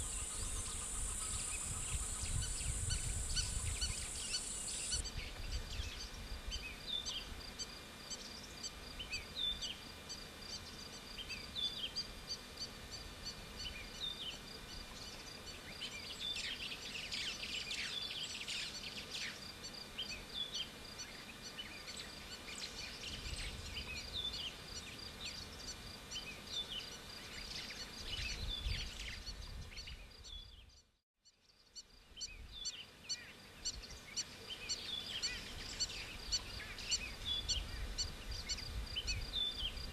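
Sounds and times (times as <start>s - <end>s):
high twittering of birds: 0.0s - 7.3s, 32.1s - 39.9s.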